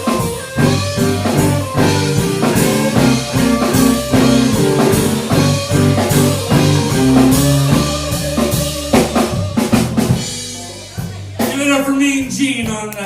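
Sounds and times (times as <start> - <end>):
blues band playing: 0.0 - 13.0
sharp drum hits: 0.6 - 10.6.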